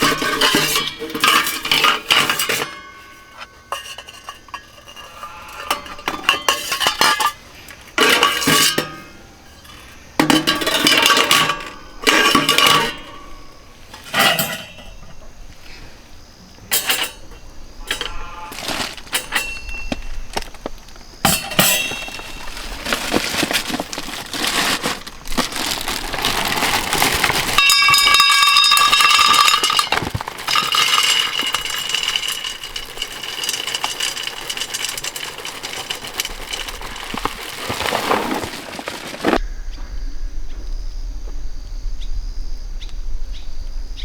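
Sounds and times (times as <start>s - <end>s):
metal cookware clinking: 0.0s - 7.4s, 14.1s - 15.0s, 16.7s - 20.3s, 21.2s - 23.7s, 27.6s - 37.7s.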